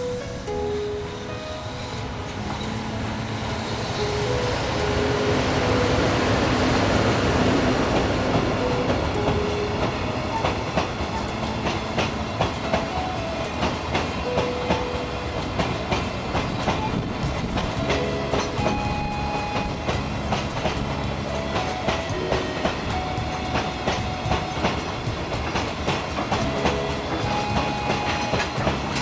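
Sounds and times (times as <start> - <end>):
freight train wheels on rail: 0.0 - 29.0.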